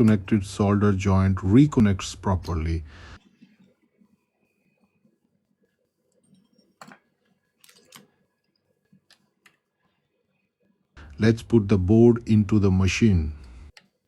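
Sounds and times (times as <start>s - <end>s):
faint clicks and taps: 6.0s - 10.0s, 13.4s - 14.0s.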